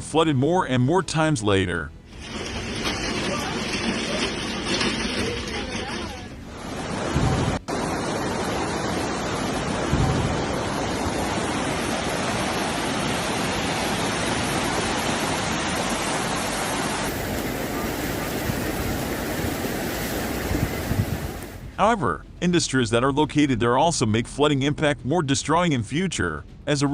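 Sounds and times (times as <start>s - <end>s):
loud rushing water: 2.1s - 21.8s.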